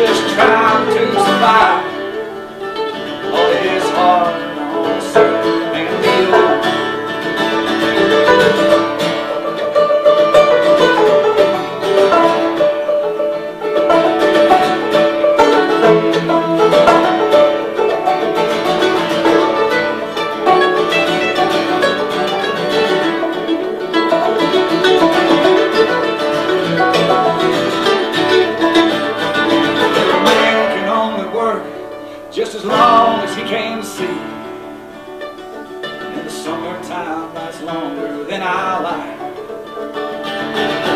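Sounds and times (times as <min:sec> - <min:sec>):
string instruments picking tune: 0:00.0 - 0:40.9
live band playing instrumental: 0:06.3 - 0:30.9.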